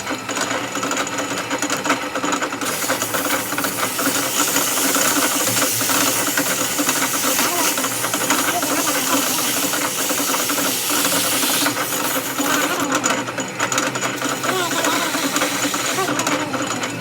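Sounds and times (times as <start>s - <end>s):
workshop machine clatter: 0.0s - 17.0s
loud hiss: 2.6s - 12.7s.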